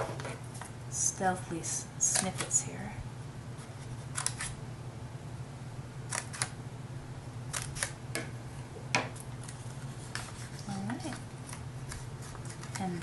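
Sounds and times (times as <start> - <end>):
scissors snipping paper: 4.1 - 4.6, 6.1 - 6.5, 7.5 - 8.0, 9.4 - 13.0.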